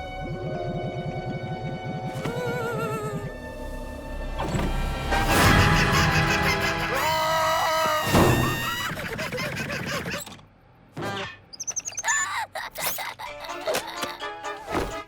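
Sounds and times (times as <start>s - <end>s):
comic background music: 0.0s - 10.0s, 13.0s - 15.0s
chirping glides: 11.5s - 12.4s.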